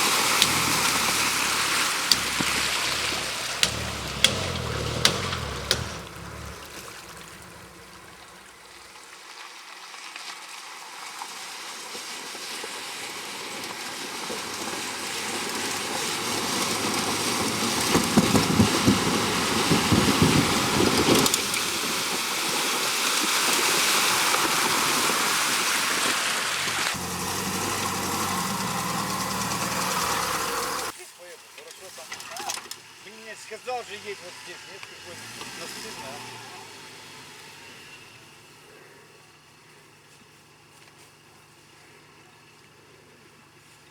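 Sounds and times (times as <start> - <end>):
vehicle driving on dirt track: 0.0 - 9.4, 10.5 - 31.0, 31.7 - 43.9
heavy rumbling and knocks: 0.3 - 8.7, 17.1 - 21.8.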